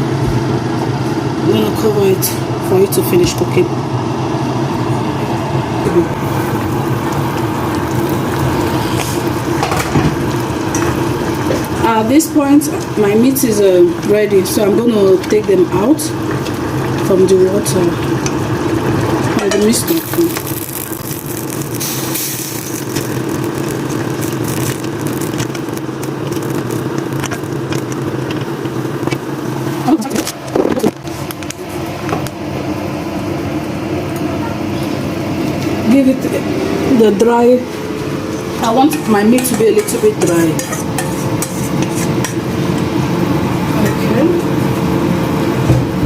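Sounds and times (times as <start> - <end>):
mechanical drone with rushing noise: 0.0 - 33.1
steady low hum: 0.0 - 46.0
meat crackling in a pot: 6.2 - 32.4, 37.8 - 45.7
spoon scraping a pot: 38.8 - 42.4.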